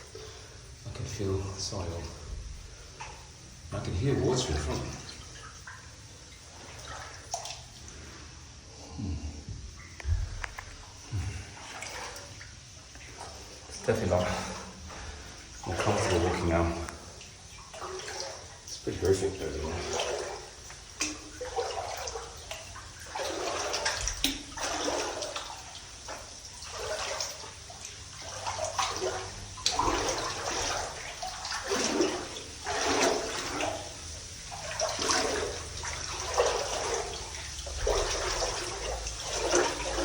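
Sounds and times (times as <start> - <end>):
boots splashing through water: 10.0 - 40.0.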